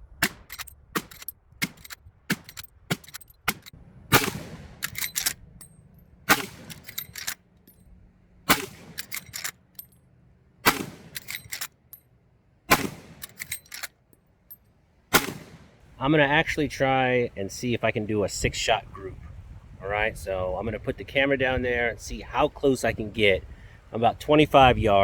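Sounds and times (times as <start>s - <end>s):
rifle lever clicking: 0.2s - 3.8s, 4.8s - 5.7s, 6.3s - 7.4s, 8.5s - 9.6s, 10.7s - 11.8s, 13.2s - 14.0s
rifle shots: 0.2s - 5.4s, 6.2s - 7.4s, 8.5s - 9.6s, 10.6s - 11.7s, 12.7s - 13.9s, 15.1s - 15.8s.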